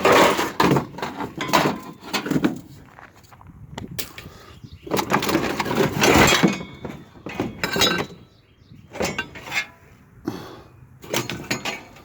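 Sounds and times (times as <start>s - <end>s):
scrap metal clattering and crashing: 0.0s - 2.8s, 4.9s - 9.9s, 11.0s - 12.0s.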